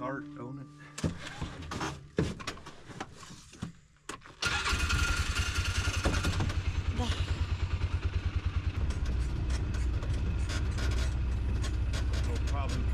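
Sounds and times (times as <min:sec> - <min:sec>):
engine running with pulsing beat: 0:05.4 - 0:12.9.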